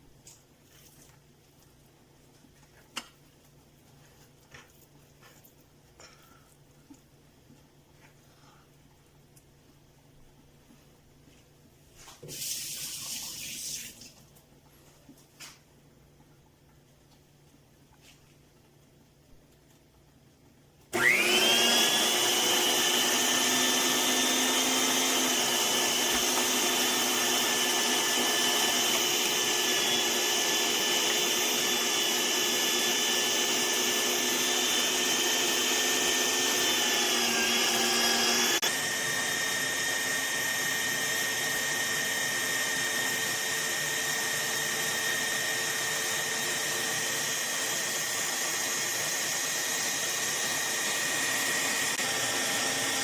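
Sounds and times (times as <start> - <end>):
electric meat grinder motor whine: 20.9 - 53.0.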